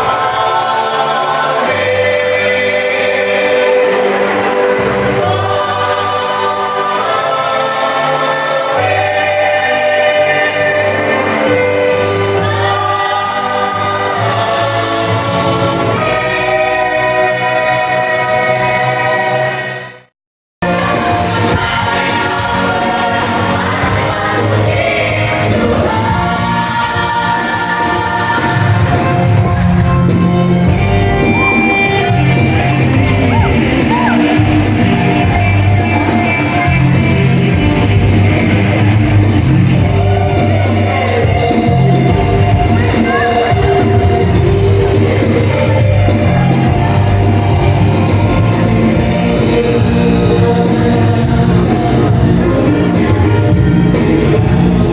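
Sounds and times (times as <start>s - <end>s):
vocal group singing in harmony: 0.0s - 54.9s
steady bass: 20.6s - 54.9s
guitar accompaniment: 20.7s - 54.9s.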